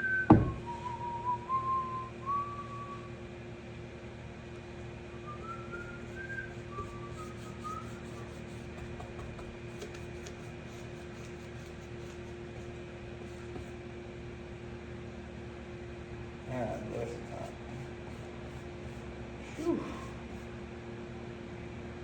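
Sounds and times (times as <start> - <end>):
person whistling a tune: 0.0 - 3.2, 5.2 - 8.4
steady machine hum: 0.0 - 22.0.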